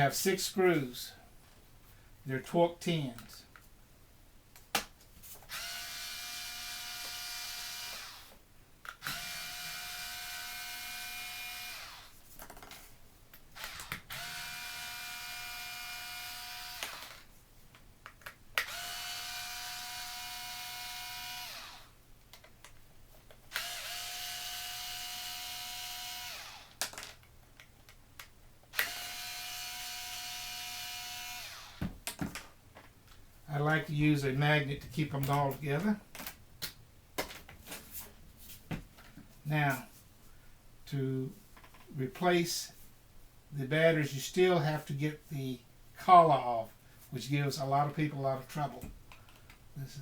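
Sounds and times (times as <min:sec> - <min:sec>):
electric screwdriver whining: 0:05.5 - 0:08.4, 0:09.0 - 0:12.1, 0:13.6 - 0:17.3, 0:18.6 - 0:22.0, 0:23.5 - 0:26.9, 0:28.7 - 0:31.9.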